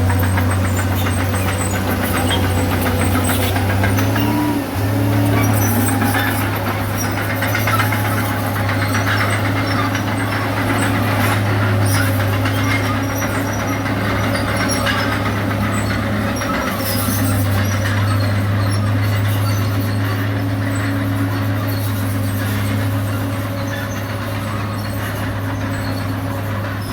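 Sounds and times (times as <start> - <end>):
bulldozer diesel engine humming: 0.0 - 26.9
high squeaks: 0.8 - 15.2.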